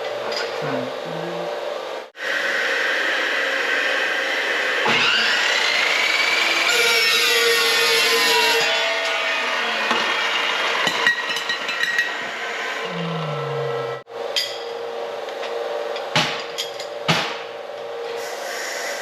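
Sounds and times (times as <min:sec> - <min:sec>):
steady hum: 0:00.0 - 0:02.2, 0:12.6 - 0:18.2.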